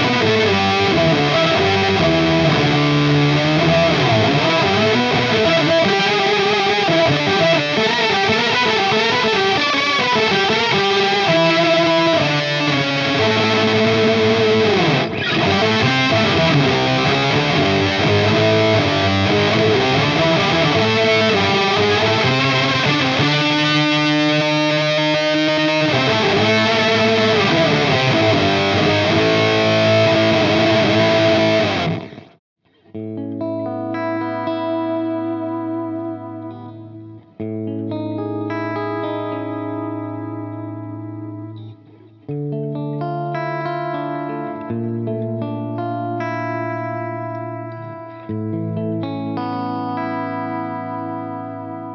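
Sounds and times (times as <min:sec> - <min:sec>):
clean electric guitar with delay: 0:00.0 - 0:51.9
distorted electric guitar: 0:00.0 - 0:51.9.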